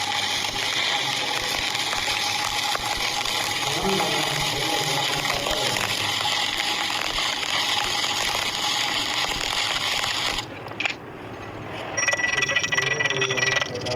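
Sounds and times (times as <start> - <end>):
fast ticking: 0.0 - 10.5, 12.0 - 13.9
welding arc crackling and sizzling: 0.0 - 10.5
steady high whine: 0.0 - 13.9.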